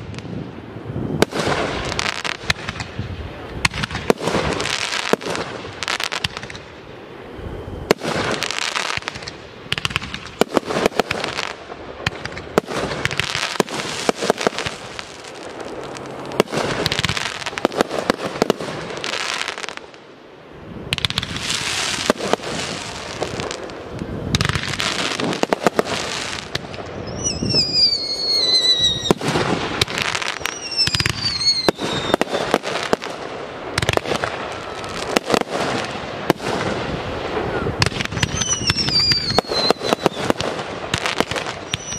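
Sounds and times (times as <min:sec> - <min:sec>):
falling firework whistles: 0:00.0 - 0:19.9, 0:20.8 - 0:33.1, 0:33.8 - 0:41.9
firework shell bursts and crackling: 0:07.9 - 0:19.8, 0:37.8 - 0:41.9.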